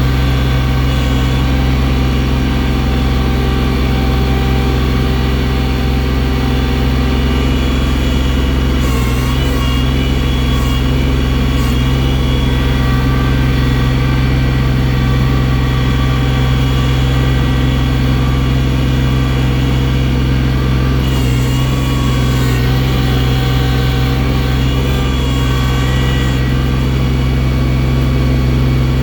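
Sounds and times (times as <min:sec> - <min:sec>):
snow-clearing machine engine running: 0:00.0 - 0:29.0.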